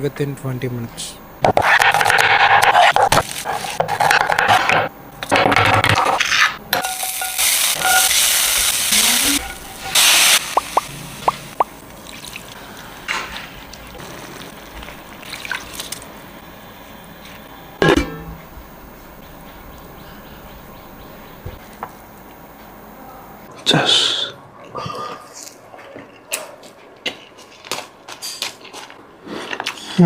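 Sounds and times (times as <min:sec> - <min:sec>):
food sizzling in a pan: 0:06.7 - 0:13.0
ingredients being stirred: 0:06.8 - 0:16.3
pan hissing: 0:06.9 - 0:11.6.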